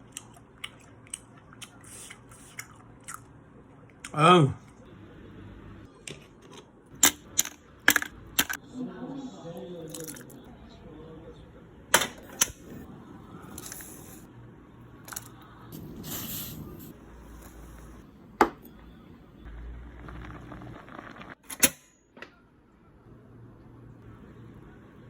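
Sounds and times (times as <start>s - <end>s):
soft eating noises: 0.0s - 4.9s.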